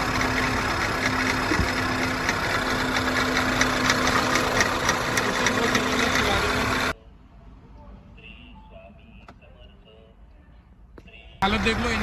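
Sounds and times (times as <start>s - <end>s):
car engine idling and misfiring: 0.0s - 7.0s, 11.4s - 12.0s.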